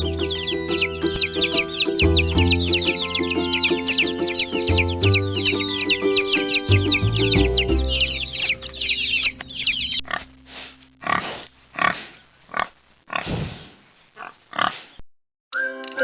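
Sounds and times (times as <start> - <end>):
chicks peeping: 0.0 - 10.3
light music: 0.0 - 10.7
pig grunting: 11.0 - 13.5.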